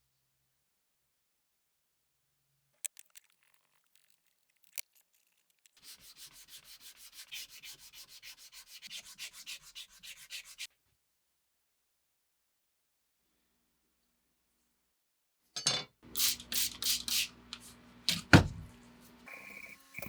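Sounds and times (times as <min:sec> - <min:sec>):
hand sanding abrasive rubbing: 0:05.8 - 0:10.7.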